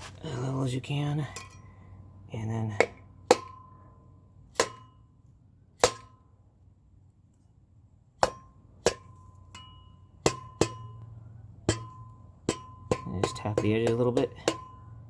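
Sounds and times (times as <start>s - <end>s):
mallet tapping metal cap: 11.7s - 14.9s.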